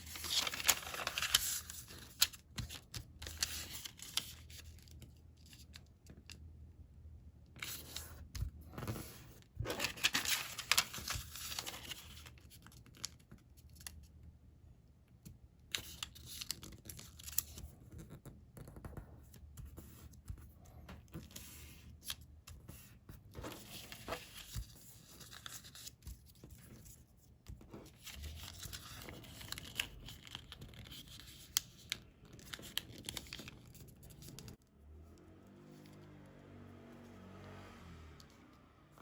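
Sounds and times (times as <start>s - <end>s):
paper crinkling and snapping: 0.0s - 6.3s, 7.6s - 14.0s, 15.7s - 17.7s, 23.4s - 34.6s.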